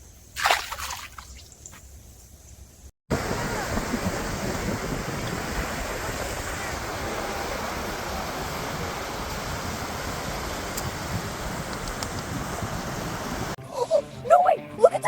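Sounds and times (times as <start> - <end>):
steady rushing outdoor noise: 3.1 - 13.6.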